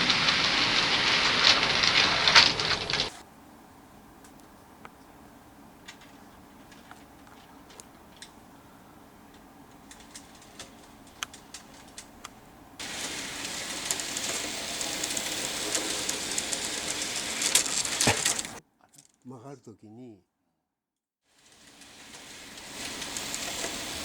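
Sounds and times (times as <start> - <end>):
model train rattling on track: 0.0 - 3.2, 5.8 - 8.5, 9.3 - 18.6, 21.4 - 24.0.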